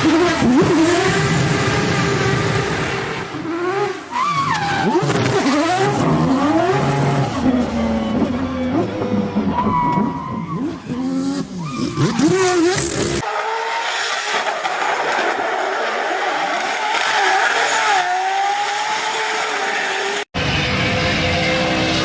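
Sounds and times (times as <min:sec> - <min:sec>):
car engine revving: 0:10.5 - 0:13.6.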